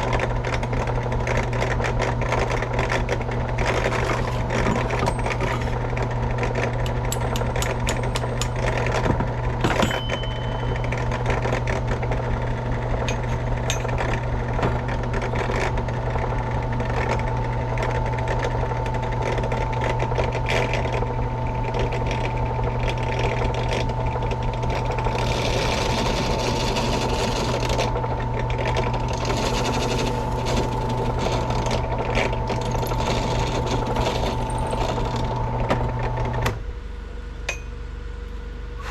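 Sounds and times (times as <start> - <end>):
small motor humming: 29.0 - 35.4.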